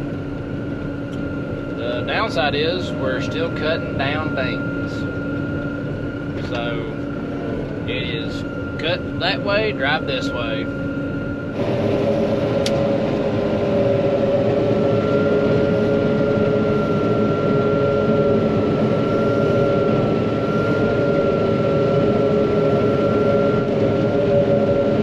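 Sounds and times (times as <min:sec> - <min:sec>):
combine harvester drone: 0:00.0 - 0:25.0
constant machine whine: 0:00.0 - 0:25.0
brief click: 0:12.6 - 0:12.8.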